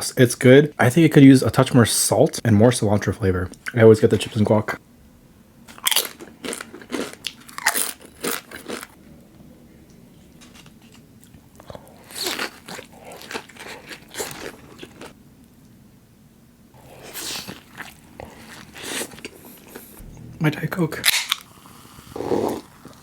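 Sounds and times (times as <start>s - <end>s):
crunchy food being chewed: 5.7s - 9.0s, 10.3s - 15.2s, 16.8s - 20.0s.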